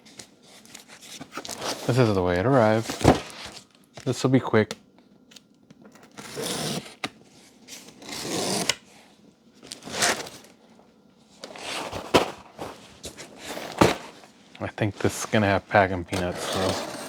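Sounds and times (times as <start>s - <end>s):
cardboard and tape rustling: 0.0s - 4.2s, 9.6s - 10.6s, 11.4s - 17.0s.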